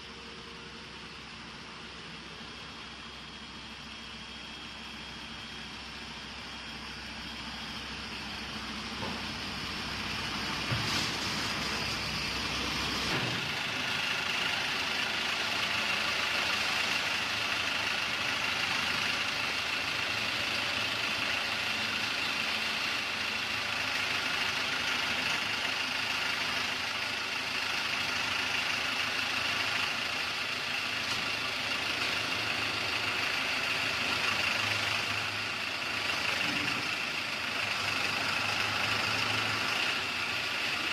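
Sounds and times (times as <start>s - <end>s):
diesel generator engine running: 0.0s - 40.9s.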